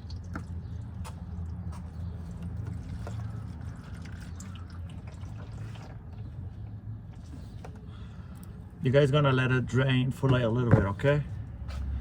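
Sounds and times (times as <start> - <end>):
faint drips: 0.0 - 6.2
oil trickling into a pan: 0.0 - 6.4.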